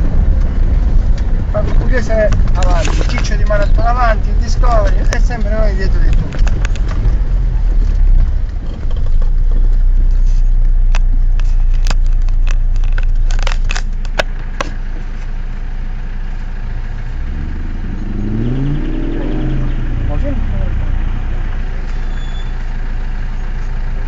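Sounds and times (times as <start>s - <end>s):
sharp knocks and rattles: 0.0s - 9.9s
off-road vehicle engine rumble: 0.0s - 24.0s.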